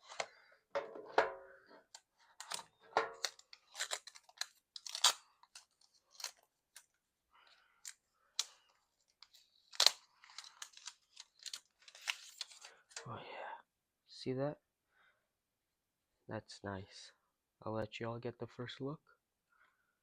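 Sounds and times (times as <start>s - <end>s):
cardboard and plastic packaging crinkling: 2.2s - 6.9s, 8.9s - 12.9s.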